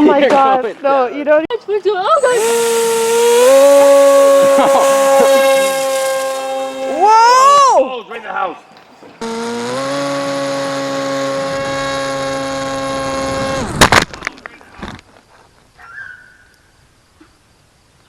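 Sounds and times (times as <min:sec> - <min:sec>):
model plane motor humming: 0:02.2 - 0:07.4, 0:09.2 - 0:13.8.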